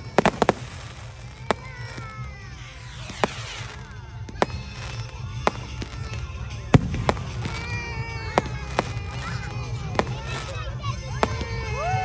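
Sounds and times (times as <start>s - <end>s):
firework whistles sliding down: 0.0s - 6.2s
firework bangs: 0.0s - 12.0s.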